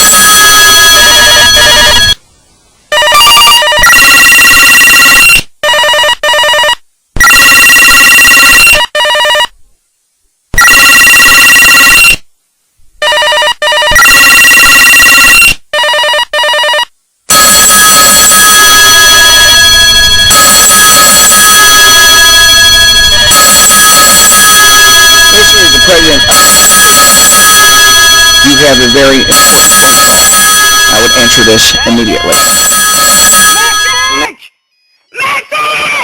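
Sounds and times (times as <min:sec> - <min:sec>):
electronic phone ringtones: 0:00.0 - 0:02.2, 0:05.6 - 0:09.5, 0:13.0 - 0:14.3, 0:15.8 - 0:34.3.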